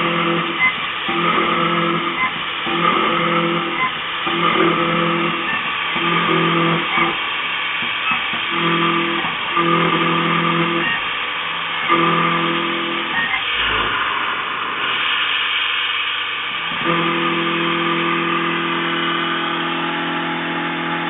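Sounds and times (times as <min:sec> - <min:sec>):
milling cutter tone: 0:00.0 - 0:07.2, 0:08.0 - 0:11.1, 0:11.8 - 0:13.4, 0:16.8 - 0:21.0
machine hiss: 0:00.0 - 0:21.0.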